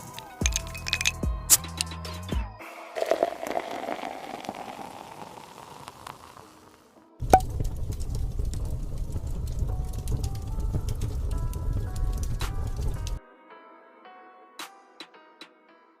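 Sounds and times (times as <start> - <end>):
cola fizzing: 2.7 - 13.2
music with low beat: 7.2 - 13.2.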